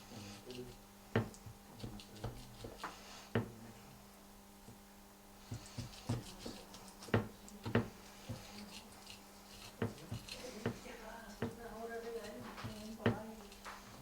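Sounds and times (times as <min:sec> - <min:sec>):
steady low hum: 0:00.0 - 0:14.0
knife knocking on cutting board: 0:01.2 - 0:03.6, 0:05.5 - 0:08.5, 0:09.8 - 0:11.7, 0:12.4 - 0:13.4.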